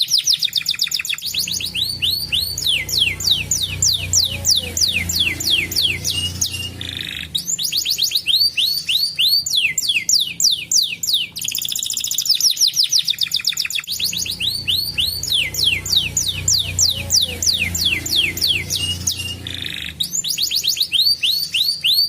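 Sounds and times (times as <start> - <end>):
canary singing trills: 0.0 - 22.0.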